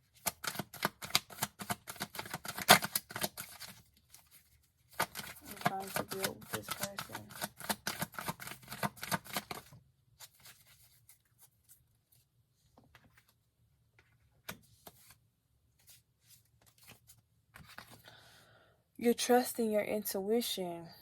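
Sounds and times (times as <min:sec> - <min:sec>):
cards shuffling: 0:00.1 - 0:11.8, 0:14.1 - 0:15.2, 0:15.8 - 0:18.1.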